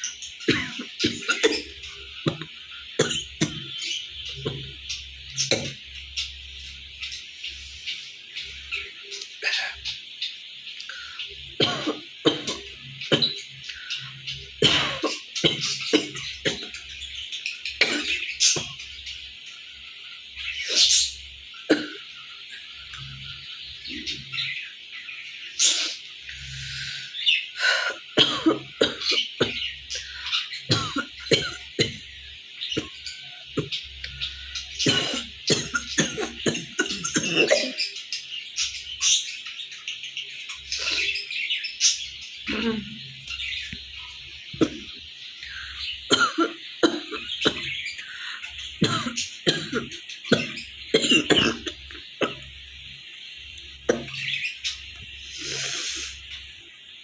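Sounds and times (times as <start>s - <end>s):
high chirping: 0.0s - 57.0s
woman coughing hard: 0.5s - 1.8s, 28.2s - 29.6s, 34.8s - 37.8s, 46.1s - 47.6s, 48.8s - 52.4s
woman coughing: 34.9s - 37.8s, 46.1s - 47.6s.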